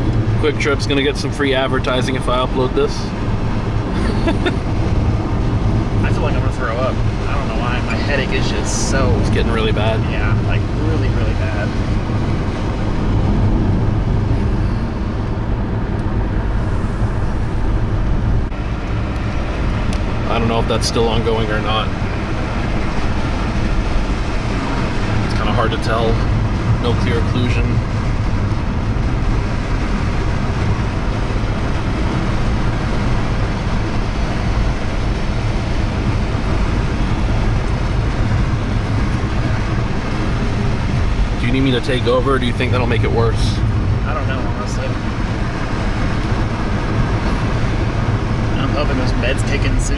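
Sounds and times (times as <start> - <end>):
car cabin road noise: 0.0 - 49.9.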